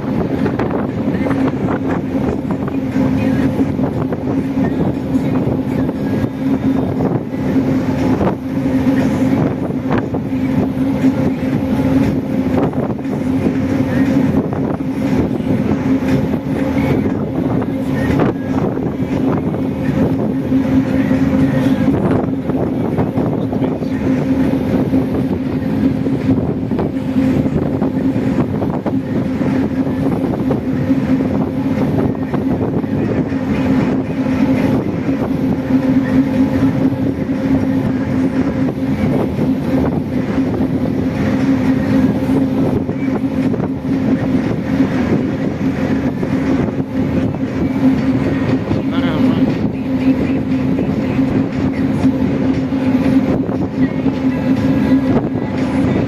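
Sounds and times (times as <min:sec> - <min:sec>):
boat engine humming: 0:00.0 - 0:56.0
rushing water noise: 0:00.0 - 0:56.0.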